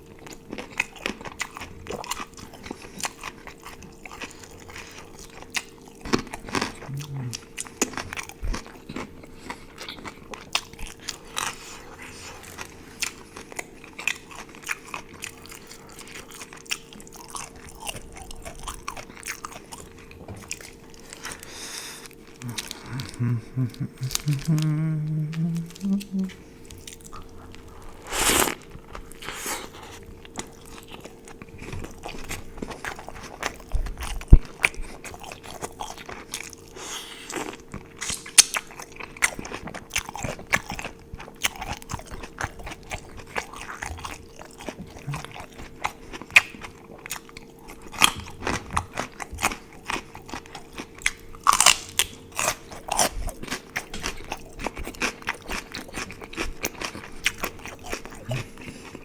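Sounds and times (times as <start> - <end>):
faint steady hum: 0.0 - 59.0
crunchy bites and chewing: 26.7 - 59.0.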